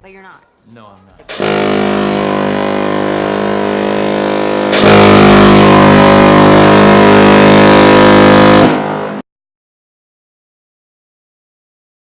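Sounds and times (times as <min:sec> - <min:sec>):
car horn honking: 0:01.3 - 0:09.2.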